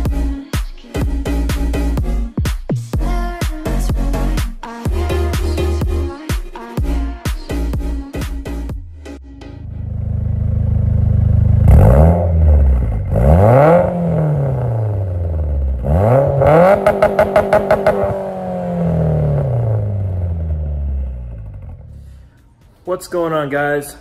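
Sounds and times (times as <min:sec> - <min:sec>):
car engine accelerating: 0:09.3 - 0:22.5
exhaust pops: 0:16.2 - 0:22.3.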